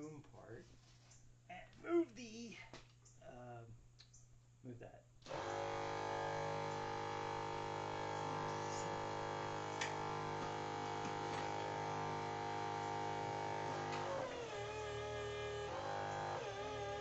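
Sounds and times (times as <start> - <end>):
electric pump motor humming: 5.2 - 17.0.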